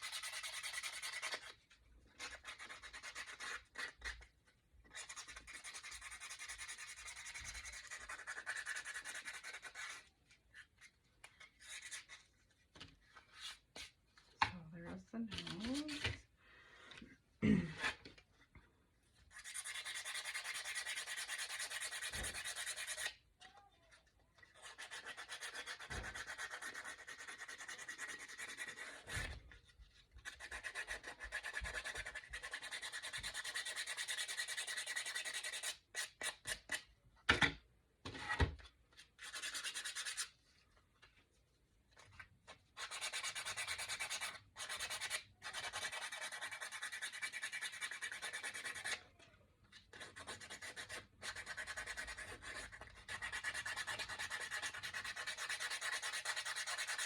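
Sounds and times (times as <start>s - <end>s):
sandpaper sanding wood: 24.7s - 29.0s, 50.4s - 57.0s.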